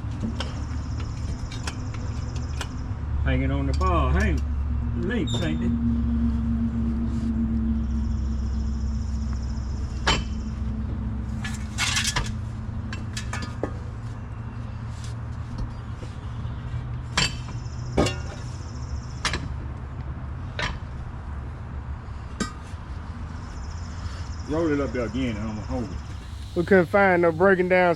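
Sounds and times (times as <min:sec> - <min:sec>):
low hum: 0:00.0 - 0:24.4, 0:25.5 - 0:27.9
metal tools clanking: 0:11.3 - 0:13.8.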